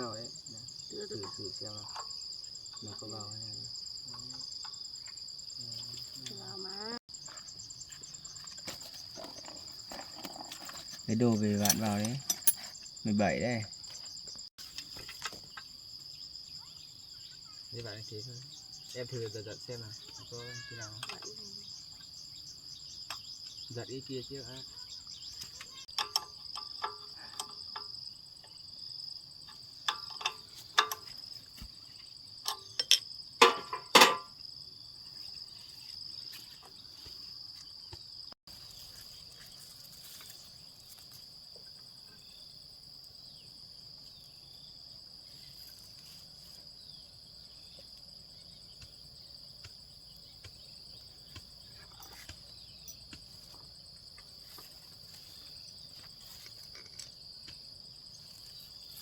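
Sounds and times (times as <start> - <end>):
crickets chirping: 0.0 - 59.0
sharp knocks and clatters: 29.4 - 31.8, 32.4 - 34.4.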